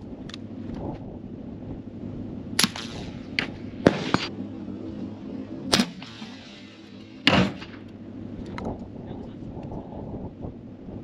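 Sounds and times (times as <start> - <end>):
suppressed pistol shots: 2.6 - 4.3, 5.7 - 7.9.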